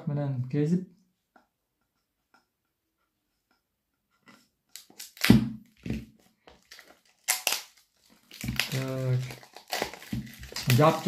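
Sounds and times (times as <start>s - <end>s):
plastic film crinkling: 4.7s - 11.0s.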